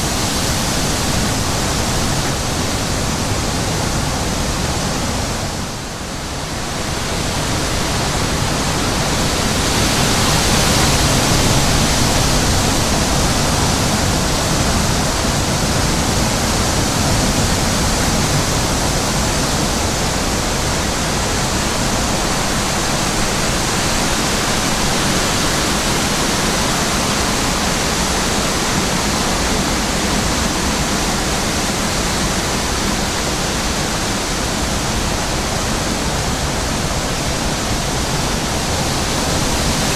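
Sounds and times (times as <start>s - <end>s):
wind on microphone: 0.0s - 39.9s.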